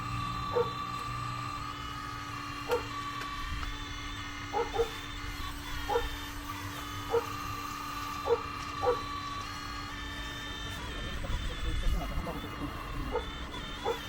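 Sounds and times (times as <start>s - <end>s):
electric whine of excavator pump: 0.0s - 14.0s
dog barking in short yelps: 4.5s - 5.0s.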